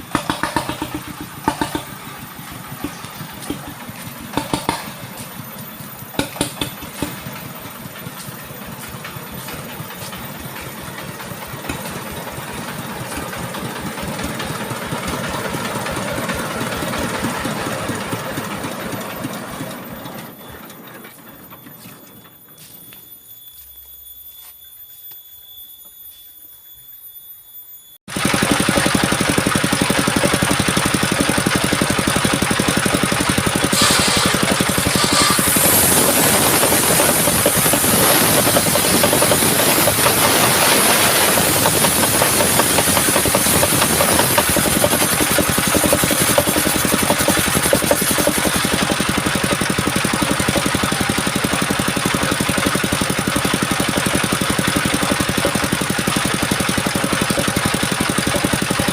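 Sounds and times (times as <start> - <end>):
engine running with fast knocking: 0.0 - 20.5, 28.1 - 58.9
faint steady high tones: 18.1 - 28.0.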